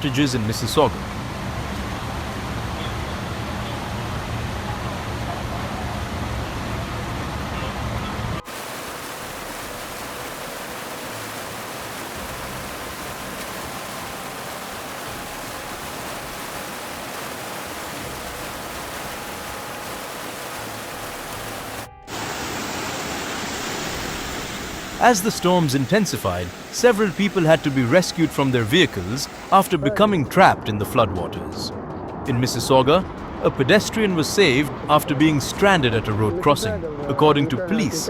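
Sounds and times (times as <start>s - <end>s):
flood water rushing: 8.4s - 29.9s.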